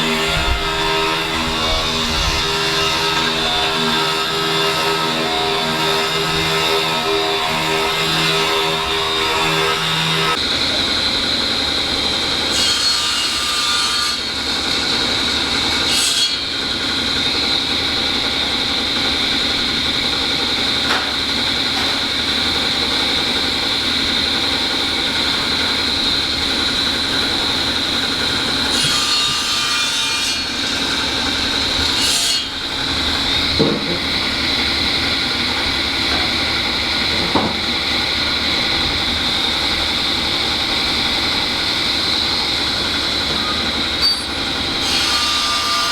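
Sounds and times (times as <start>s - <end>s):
machinery whining: 0.0s - 12.5s.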